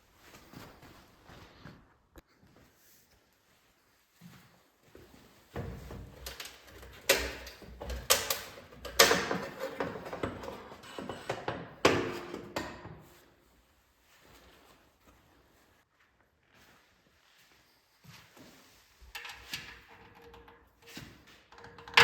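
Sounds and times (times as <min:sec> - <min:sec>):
metal parts clanking and rattling: 0:06.2 - 0:12.3.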